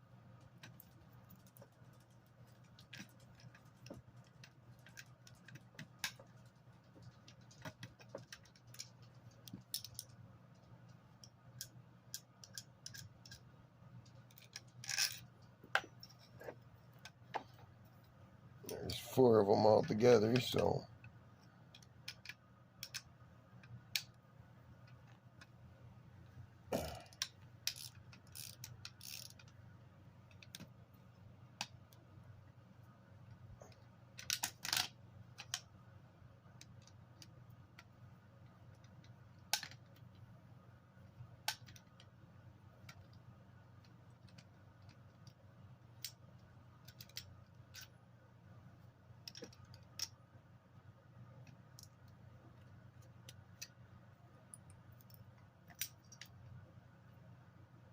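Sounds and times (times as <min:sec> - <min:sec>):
low steady hum: 0:00.0 - 0:57.9.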